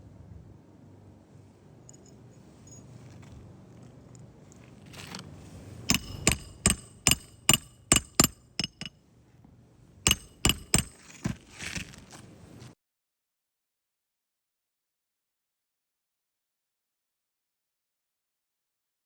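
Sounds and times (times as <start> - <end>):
hammer striking metal: 5.9 - 9.0, 10.1 - 11.9.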